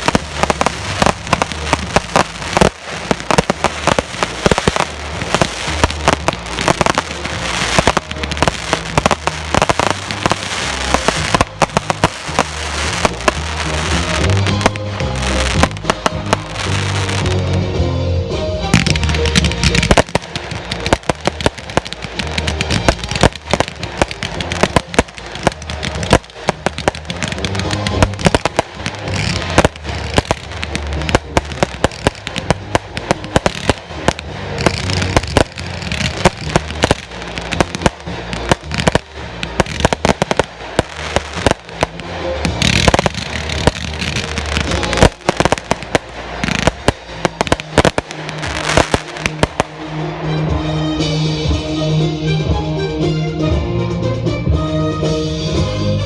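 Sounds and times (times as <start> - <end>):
fireworks bursting and crackling: 0.0 - 17.6, 18.7 - 50.7.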